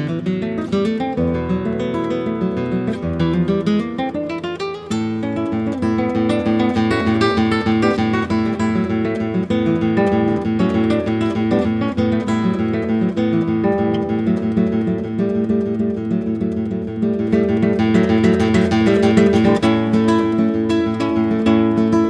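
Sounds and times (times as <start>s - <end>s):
acoustic guitar music: 0.0s - 22.0s.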